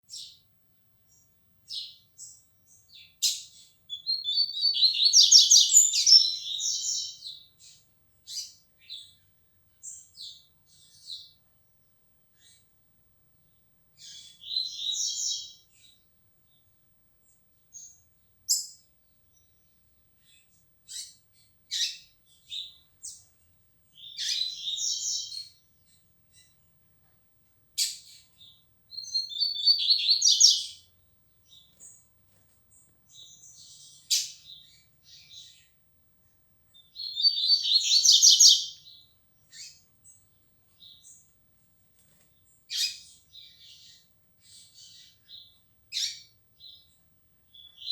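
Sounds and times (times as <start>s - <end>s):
bird song phrases: 0.0s - 12.8s, 13.4s - 26.7s, 27.7s - 47.9s.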